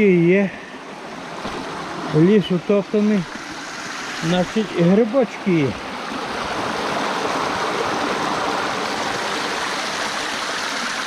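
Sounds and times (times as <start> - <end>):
stream flowing over rocks: 0.0 - 11.0.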